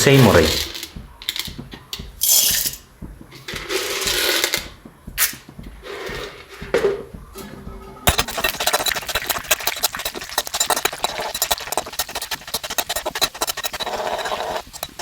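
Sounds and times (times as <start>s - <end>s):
kitchen utensils scraping and clinking: 8.1s - 15.0s.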